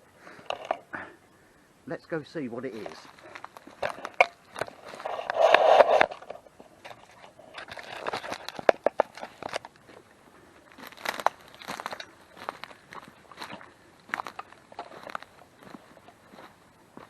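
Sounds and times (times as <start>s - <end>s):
rustling through vegetation: 2.4s - 17.0s
footsteps crunching dry leaves: 2.7s - 6.1s, 7.0s - 10.1s, 10.7s - 17.0s.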